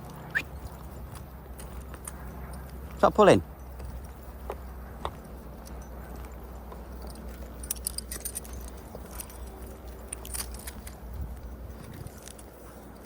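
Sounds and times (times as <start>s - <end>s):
small metal pieces jingling: 6.9s - 11.1s.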